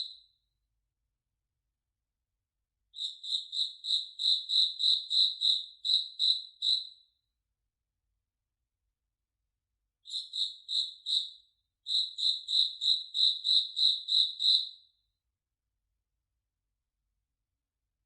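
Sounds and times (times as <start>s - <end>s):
cricket chirping: 3.0s - 7.0s, 10.0s - 14.8s.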